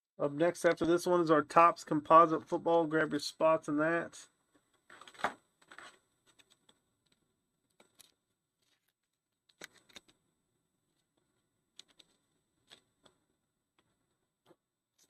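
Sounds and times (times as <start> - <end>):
trading cards rustling and clicking: 4.8 - 10.2, 10.9 - 13.2.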